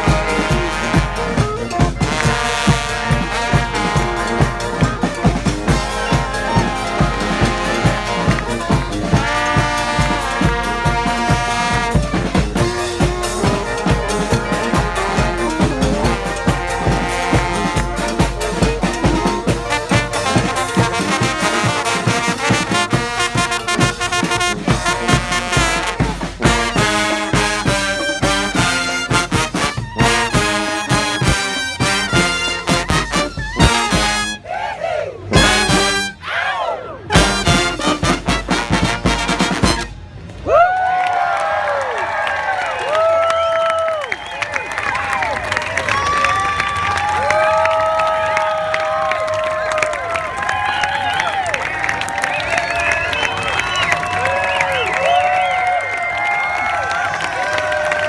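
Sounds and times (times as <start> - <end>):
steady drum beat: 0.0 - 34.4, 35.4 - 36.2, 37.2 - 40.0
brass band playing: 0.0 - 40.4, 44.7 - 58.0.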